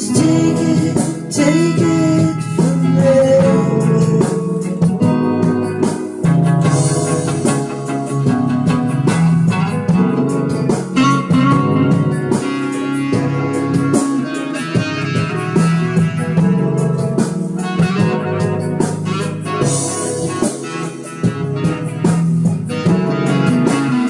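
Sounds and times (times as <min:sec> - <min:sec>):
sustained low bass notes: 0:00.0 - 0:12.4, 0:14.8 - 0:20.4
plucked notes: 0:03.0 - 0:23.8.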